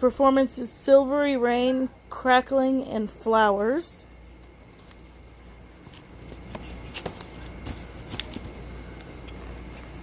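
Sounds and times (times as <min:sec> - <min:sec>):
boxes handled clicks and rustles: 0:04.4 - 0:10.0.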